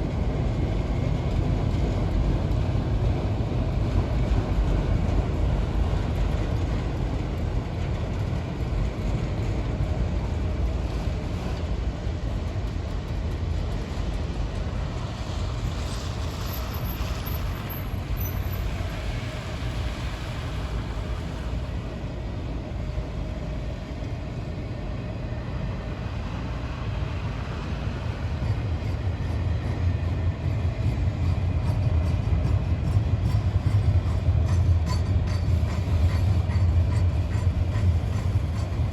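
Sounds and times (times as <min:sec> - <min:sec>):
train wheels rumbling on rail: 0:00.0 - 0:38.9.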